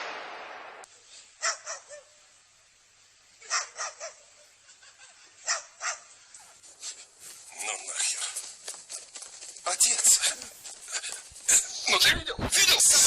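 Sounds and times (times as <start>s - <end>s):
dog barking: 1.4s - 2.2s, 3.4s - 4.4s, 5.4s - 6.2s.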